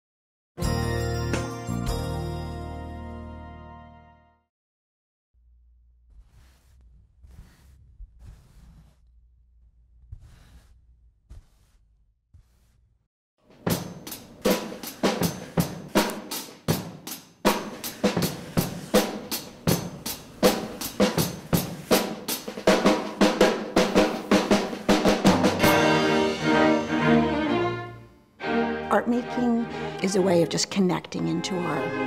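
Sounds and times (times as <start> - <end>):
drum kit playing: 13.5 - 27.6.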